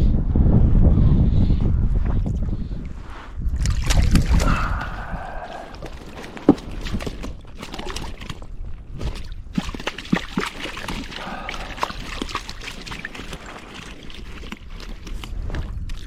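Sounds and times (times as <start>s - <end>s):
fish splashing water: 3.6s - 16.0s.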